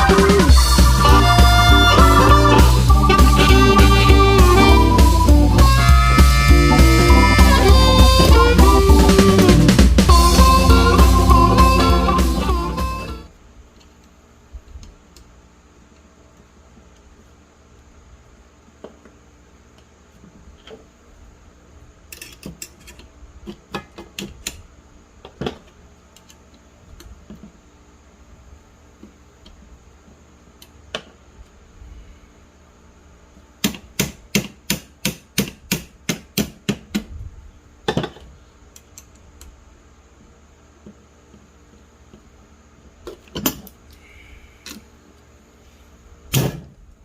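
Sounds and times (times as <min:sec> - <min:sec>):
small metal parts clicking: 0:22.1 - 0:23.0.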